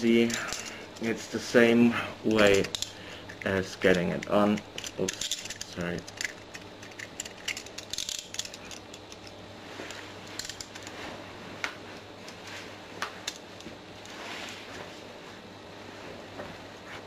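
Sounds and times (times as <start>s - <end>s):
handcuffs clicking and clinking: 2.5s - 9.4s.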